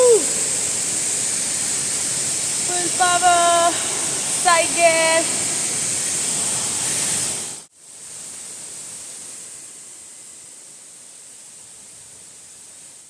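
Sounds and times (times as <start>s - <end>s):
waterfall rushing: 0.0s - 7.7s.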